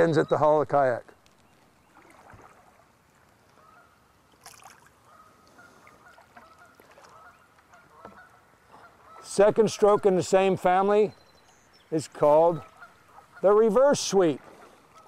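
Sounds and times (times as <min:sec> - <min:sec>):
distant geese honking: 0:03.4 - 0:04.2, 0:05.0 - 0:15.0.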